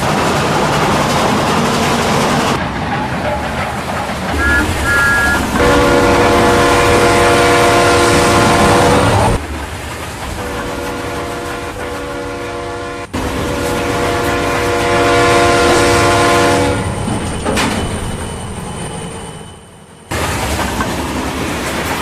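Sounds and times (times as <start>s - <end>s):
train rumbling: 0.0s - 22.0s
locomotive horn blasts: 4.3s - 9.4s, 10.4s - 13.2s, 13.8s - 16.9s.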